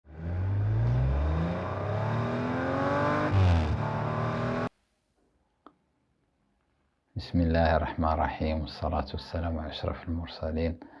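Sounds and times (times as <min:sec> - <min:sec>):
engine revving: 0:00.0 - 0:04.7.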